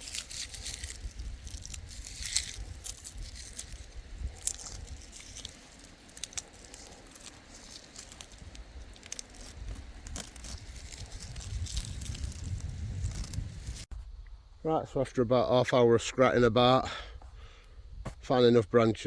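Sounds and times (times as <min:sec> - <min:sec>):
dry twigs crackling and crunching: 0:00.0 - 0:14.0
low rumble of handling: 0:00.0 - 0:14.4.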